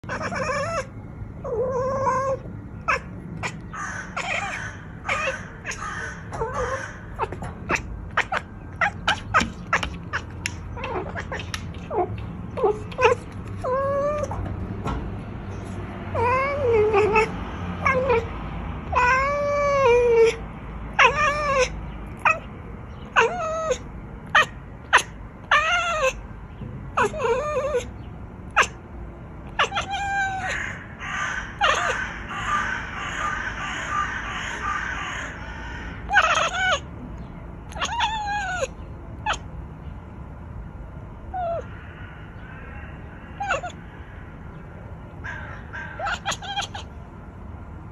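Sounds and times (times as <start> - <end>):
cat chirping and meowing: 0.0 - 14.5, 15.6 - 26.2, 26.9 - 35.4, 36.0 - 36.9, 37.7 - 39.5, 41.3 - 41.7, 43.4 - 43.8, 45.9 - 47.0.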